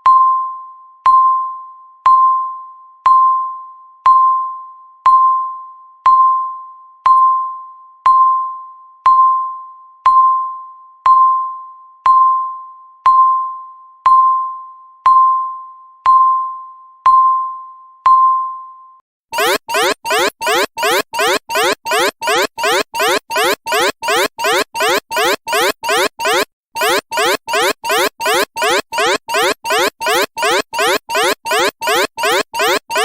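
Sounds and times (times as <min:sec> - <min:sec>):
countdown timer beeping: 0:19.4 - 0:33.0.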